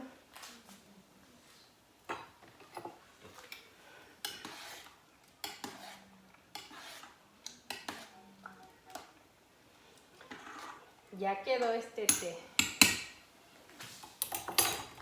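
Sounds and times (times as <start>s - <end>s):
metal utensils clinking on pot: 14.2s - 15.0s.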